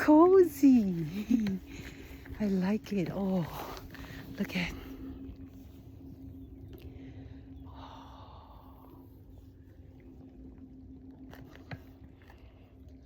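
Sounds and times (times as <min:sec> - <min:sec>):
steady low hum: 0:00.0 - 0:13.0
quiet breathing: 0:00.8 - 0:10.1.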